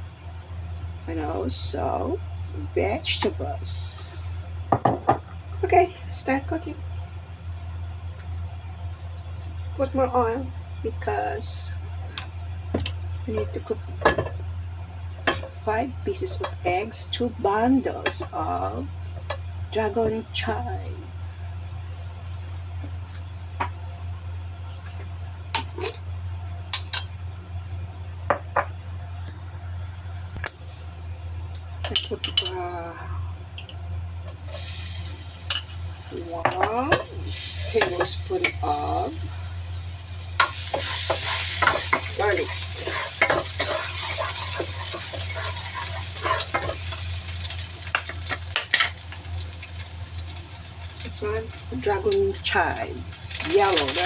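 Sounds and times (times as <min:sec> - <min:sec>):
steady low hum: 0:00.0 - 0:54.0
garlic sizzling in oil: 0:34.3 - 0:54.0
utensils clinking against dishes: 0:40.4 - 0:50.4.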